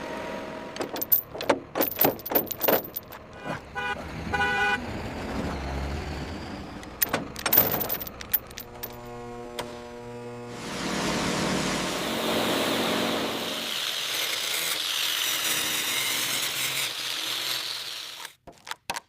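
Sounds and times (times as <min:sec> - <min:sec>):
sharp knocks and clatters: 0:00.8 - 0:03.3, 0:06.9 - 0:09.0
vehicle horn toots: 0:03.4 - 0:04.8.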